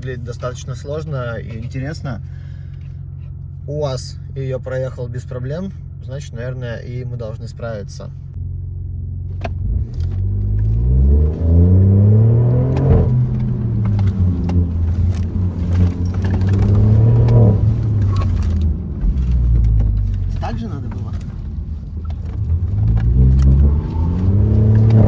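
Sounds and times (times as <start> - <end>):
turbo engine accelerating hard: 9.4 - 25.0.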